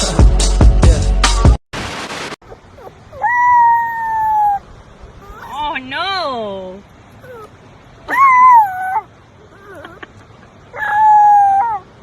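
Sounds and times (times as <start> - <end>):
animal howling: 2.5 - 5.7, 7.2 - 7.5, 8.1 - 10.1, 10.7 - 12.0.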